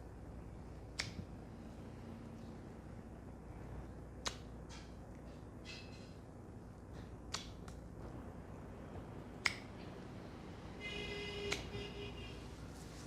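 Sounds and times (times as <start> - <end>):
hands snapping cracks: 1.0 - 1.3, 4.2 - 4.8, 7.3 - 7.8, 9.4 - 9.8
faint rubbing strokes: 12.3 - 13.0.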